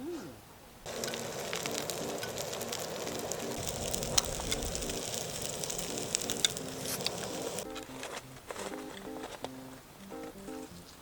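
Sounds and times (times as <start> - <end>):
sharp pops and crackles: 0.8 - 11.0
food sizzling in a frying pan: 0.9 - 7.7.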